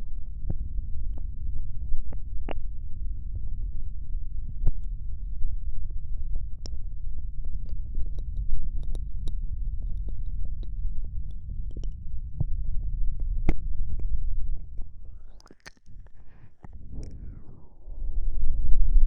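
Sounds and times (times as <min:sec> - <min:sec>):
low muffled rumble: 0:00.0 - 0:19.0
wet mouth clicks and smacks: 0:15.2 - 0:16.8.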